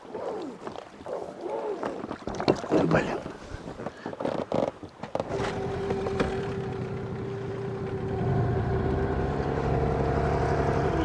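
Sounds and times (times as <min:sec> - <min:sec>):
outboard motor running: 0:05.2 - 0:11.0.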